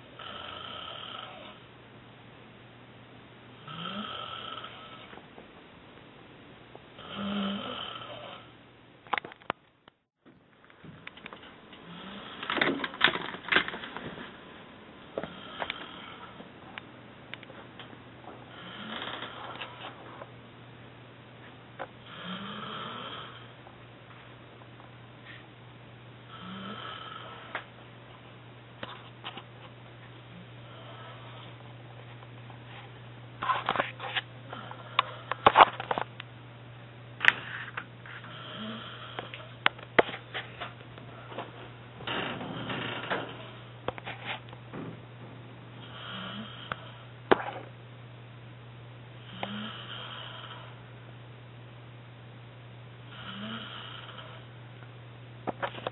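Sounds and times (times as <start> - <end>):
steady low hum: 0.0 - 55.9
man snoring: 0.2 - 1.6, 3.6 - 5.1, 7.0 - 8.5, 11.8 - 12.7, 15.2 - 16.4, 18.5 - 19.6, 22.0 - 23.5, 26.3 - 27.6, 30.7 - 31.5, 38.3 - 39.5, 45.8 - 47.0, 49.2 - 50.8, 53.1 - 54.5.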